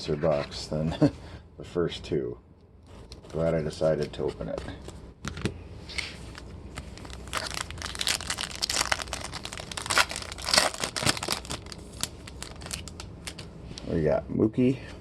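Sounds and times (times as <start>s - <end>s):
foil wrapper crinkling and tearing: 6.3s - 13.5s.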